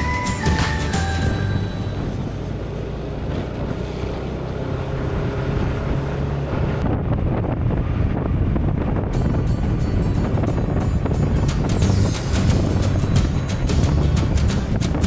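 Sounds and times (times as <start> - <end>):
scooter engine running: 0.0 - 5.5
wind buffeting microphone: 3.3 - 15.0.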